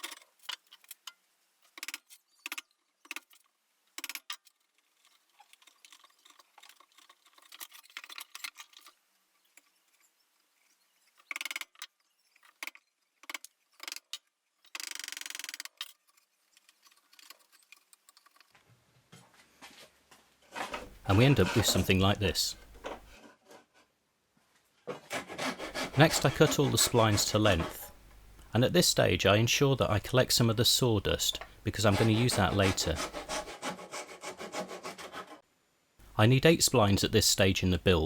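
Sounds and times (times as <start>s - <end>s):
scraping rasp: 20.5s - 23.9s, 24.9s - 28.4s, 30.1s - 35.4s.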